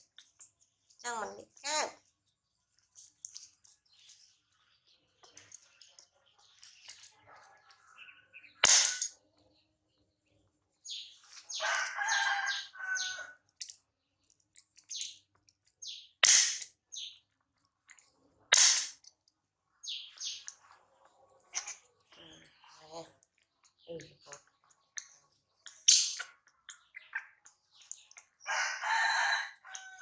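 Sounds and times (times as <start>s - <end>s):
sharp cracks: 8.6s - 9.1s, 16.2s - 16.8s, 18.5s - 19.1s
high-pitched chirps and squeaks: 24.2s - 28.4s.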